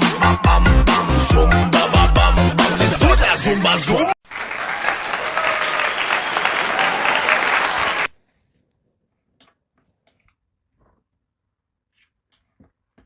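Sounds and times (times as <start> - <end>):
applause: 4.2 - 8.2.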